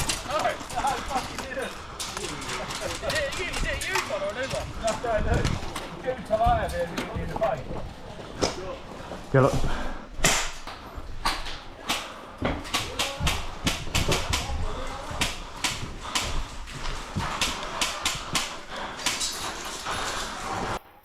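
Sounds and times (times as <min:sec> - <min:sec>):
airsoft guns popping: 0:00.0 - 0:06.0, 0:10.2 - 0:19.5.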